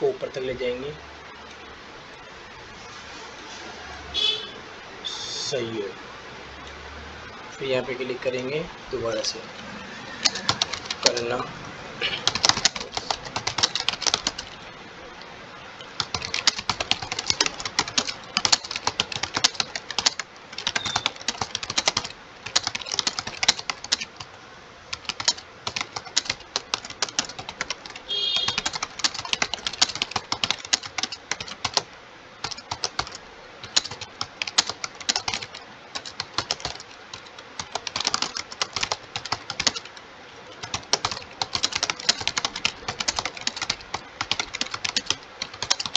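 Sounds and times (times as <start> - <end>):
keyboard typing clicks: 10.2 - 11.3, 12.2 - 14.6, 15.8 - 24.2, 25.0 - 40.0, 40.6 - 45.9.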